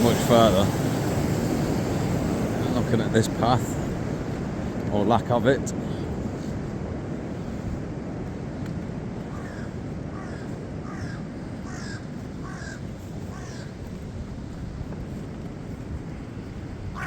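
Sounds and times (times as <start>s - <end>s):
steady low rumble: 0.0s - 17.0s
crow cawing: 9.3s - 13.8s.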